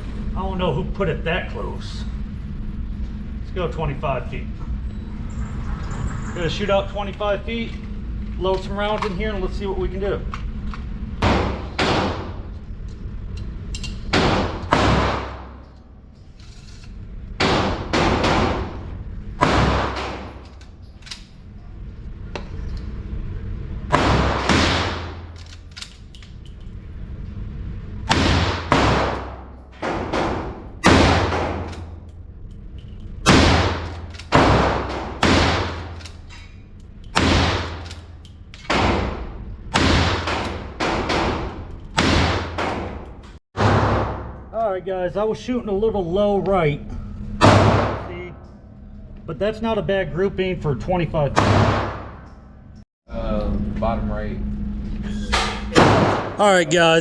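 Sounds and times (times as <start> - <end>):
rifle shots echoing indoors: 14.1 - 15.7.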